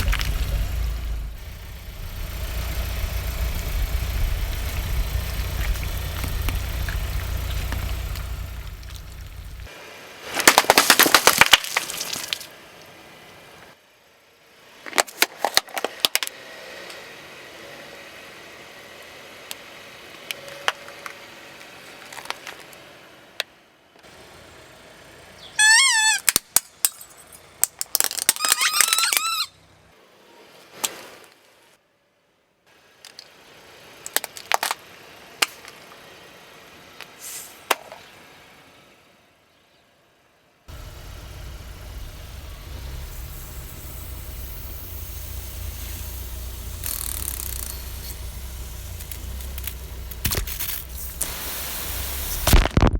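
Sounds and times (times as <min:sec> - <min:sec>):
objects crunching under tyre: 0:00.0 - 0:03.7, 0:04.3 - 0:09.7, 0:10.3 - 0:12.5, 0:40.7 - 0:51.3, 0:52.1 - 0:52.9
short wavering squeak: 0:25.6 - 0:26.3, 0:28.4 - 0:29.6.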